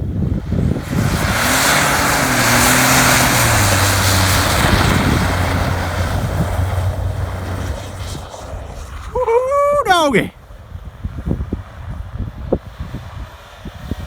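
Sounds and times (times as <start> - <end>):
truck engine revving hard: 0.3 - 8.6.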